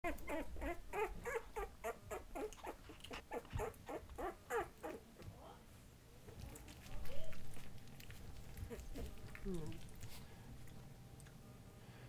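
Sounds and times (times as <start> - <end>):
puppies whimpering and squeaking: 0.0 - 5.0, 8.6 - 9.4.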